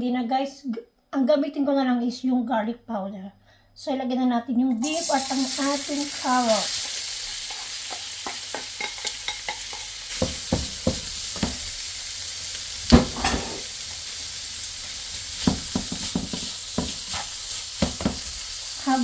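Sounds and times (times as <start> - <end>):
food sizzling in a frying pan: 4.8 - 19.0
spatula scraping a pan: 13.0 - 13.8, 15.3 - 18.5.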